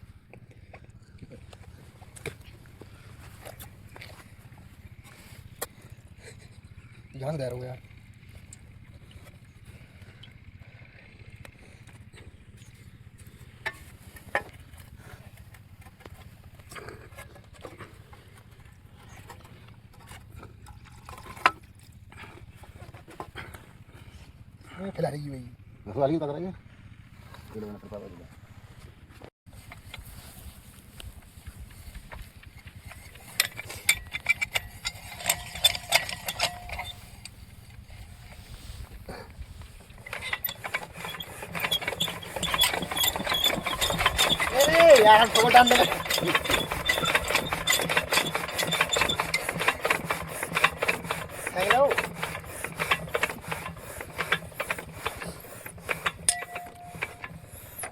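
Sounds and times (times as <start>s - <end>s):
low steady rumble: 0.0s - 47.8s
diesel engine running: 28.4s - 57.9s
metallic clicks and clinks: 32.9s - 37.4s, 40.0s - 57.9s.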